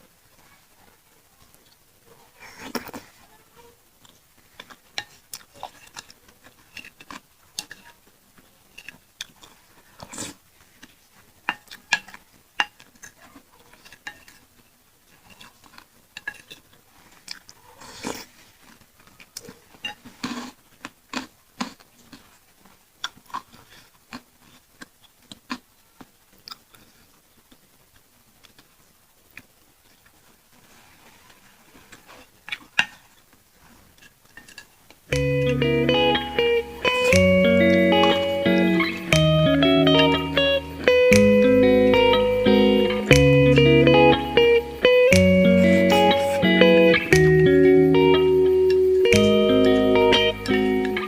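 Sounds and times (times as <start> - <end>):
chewing and wet mouth sounds: 4.0 - 7.9.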